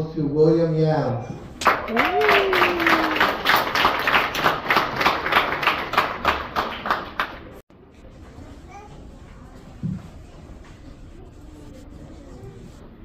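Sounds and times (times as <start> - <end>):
audience applauding: 1.6 - 7.6.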